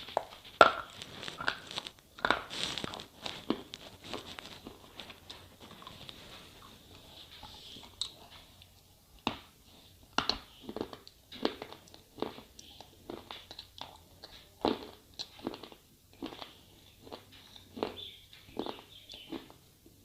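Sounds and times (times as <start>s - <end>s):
slate pencil crunching: 0.0s - 7.7s.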